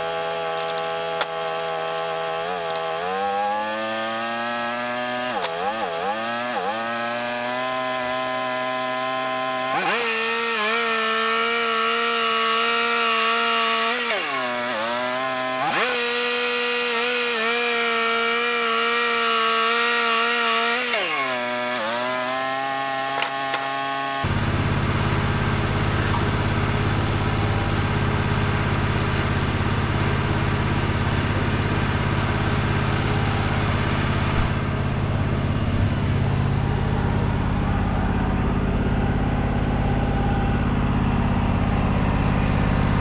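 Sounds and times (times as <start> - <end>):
band blade cutting log: 0.0 - 24.3, 33.6 - 34.8
sawmill engine revving: 0.0 - 43.0.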